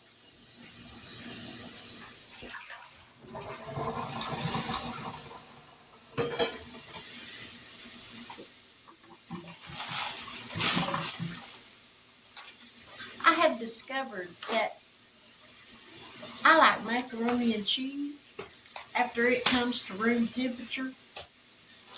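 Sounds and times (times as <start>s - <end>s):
tap water running into a pan: 0.0s - 21.9s
metal pan clank: 6.2s - 6.7s.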